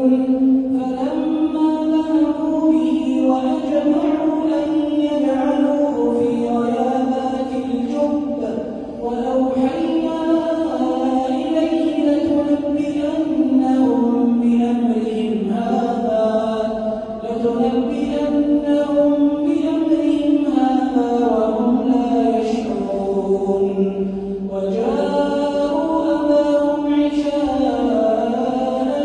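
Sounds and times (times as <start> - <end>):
man chanting melodically: 0.0 - 29.0.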